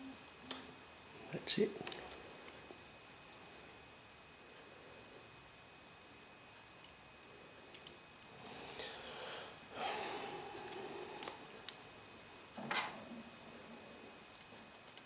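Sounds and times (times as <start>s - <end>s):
person breathing or sniffing: 8.5s - 11.4s
small tools clicking and tapping: 14.3s - 15.0s.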